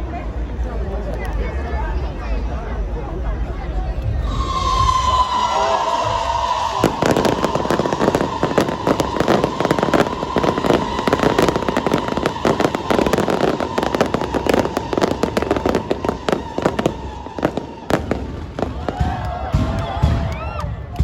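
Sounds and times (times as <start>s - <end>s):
steady high tone: 4.1s - 18.0s
fireworks crackling pops: 4.5s - 21.0s.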